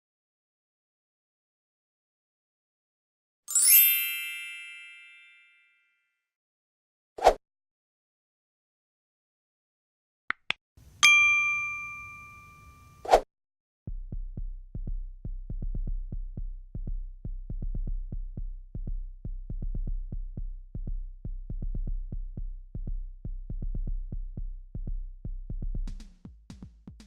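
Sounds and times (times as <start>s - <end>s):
sharp high percussion: 11.0s - 13.0s.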